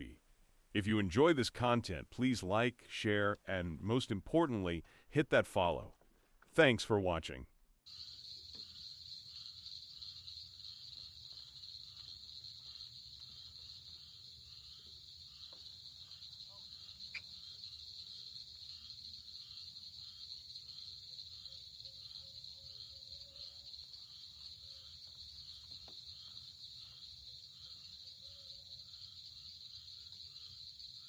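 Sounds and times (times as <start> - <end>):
crickets chirping chorus: 7.9 - 31.0
soft pulsing insect call: 7.9 - 31.0.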